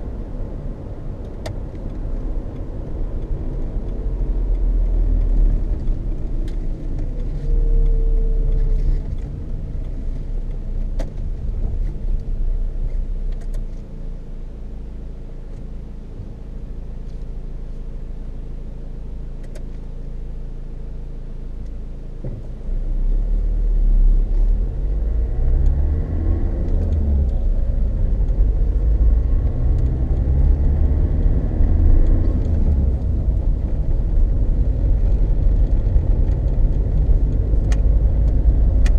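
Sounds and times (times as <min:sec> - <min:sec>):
tyre road noise rumble: 0:00.0 - 0:20.0, 0:21.5 - 0:38.9.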